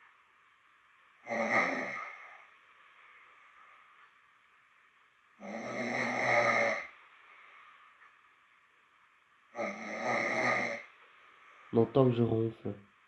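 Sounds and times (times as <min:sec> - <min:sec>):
man snoring: 0:01.2 - 0:02.4, 0:05.4 - 0:07.0, 0:09.6 - 0:10.9.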